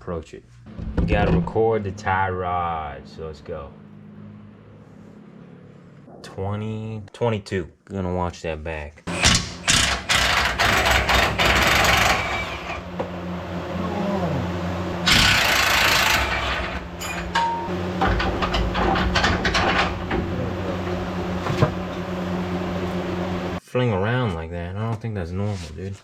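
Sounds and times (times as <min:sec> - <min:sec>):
truck engine idling: 0:09.1 - 0:23.6.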